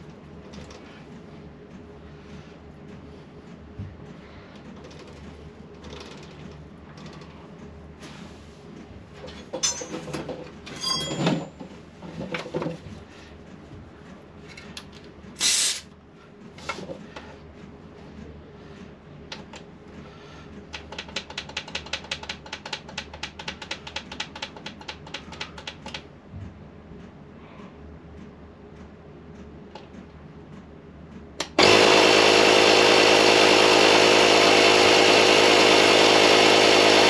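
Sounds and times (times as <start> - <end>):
metal tools clinking and clanking: 9.3 - 11.7
hiss-like burst: 15.4 - 15.8
rapid even clicking: 20.7 - 26.1.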